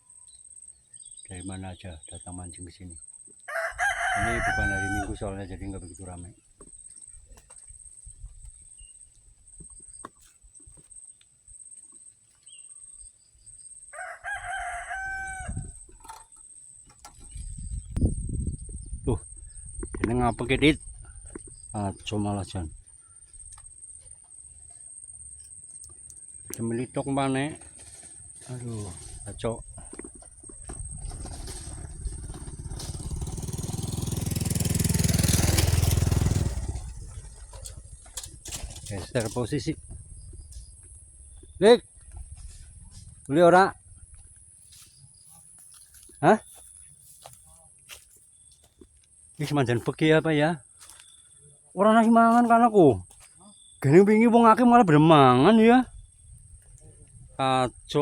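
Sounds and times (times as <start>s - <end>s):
rooster crowing: 3.4s - 5.5s, 13.9s - 15.9s
motorcycle engine passing by: 30.6s - 39.6s.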